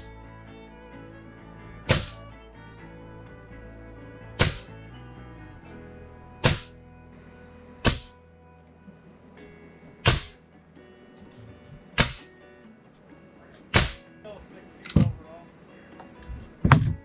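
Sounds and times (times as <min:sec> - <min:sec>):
background music: 0:00.0 - 0:17.0
sharp cracks with hiss: 0:10.0 - 0:10.4, 0:12.0 - 0:12.3, 0:13.7 - 0:14.1.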